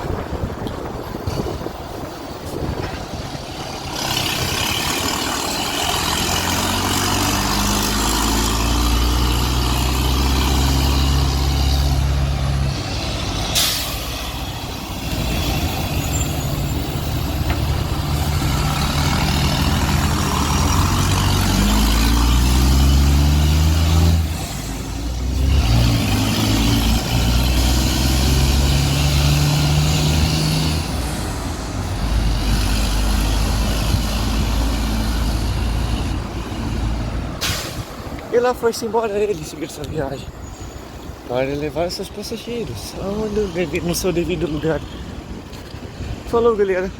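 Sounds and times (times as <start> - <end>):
diesel coach engine accelerating: 0.0 - 46.9
compressed air hiss: 13.5 - 14.2, 37.4 - 38.0.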